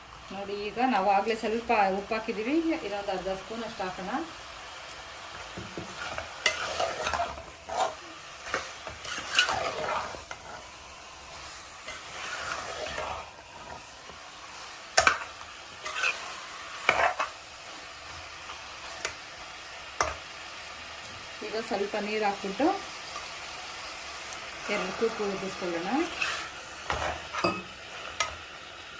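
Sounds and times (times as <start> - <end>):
chicken sizzling in oil: 0.0 - 28.9
spoon scraping and knocking pot: 26.2 - 28.4.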